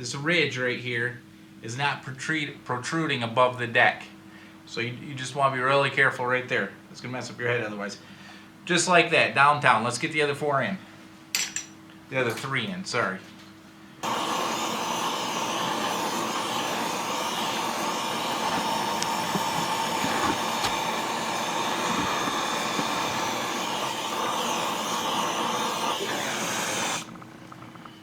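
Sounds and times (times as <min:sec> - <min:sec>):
blower rushing noise: 0:14.0 - 0:27.8.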